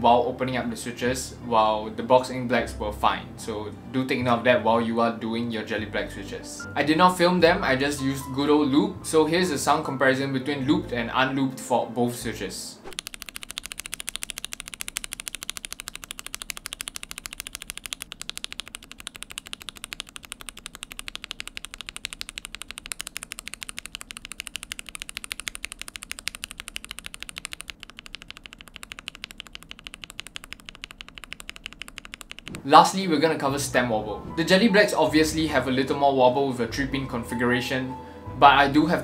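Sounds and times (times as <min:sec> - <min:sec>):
keyboard switches clacking: 0:12.9 - 0:32.6.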